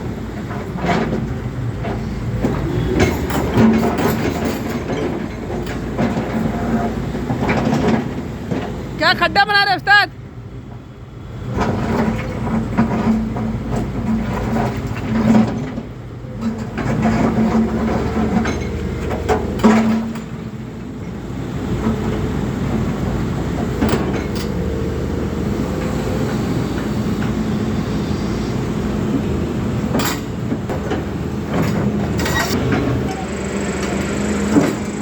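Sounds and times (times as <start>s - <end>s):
excavator diesel engine running: 0.0s - 35.0s
sharp metal knocks and clanks: 0.8s - 6.5s.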